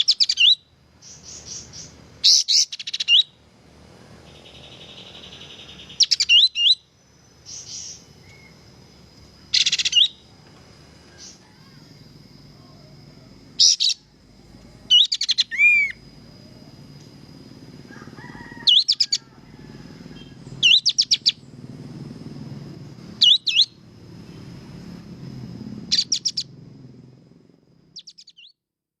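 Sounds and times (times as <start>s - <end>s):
songbird chirping rapidly: 0.0s - 10.4s, 11.1s - 16.7s, 18.4s - 19.3s, 20.1s - 21.7s, 23.0s - 23.9s, 25.8s - 26.6s, 27.9s - 28.6s.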